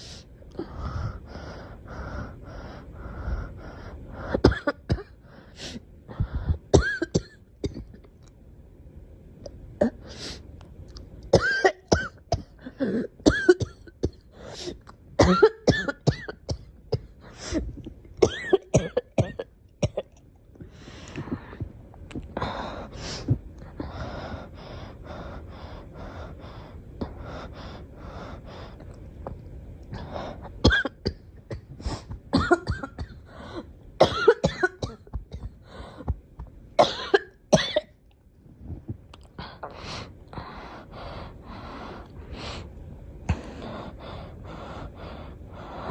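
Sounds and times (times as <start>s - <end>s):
girl coughing: 4.4s - 5.2s, 6.7s - 8.0s, 11.4s - 14.2s, 15.2s - 17.1s, 18.2s - 20.1s, 30.6s - 33.2s, 34.0s - 35.5s, 36.8s - 38.0s.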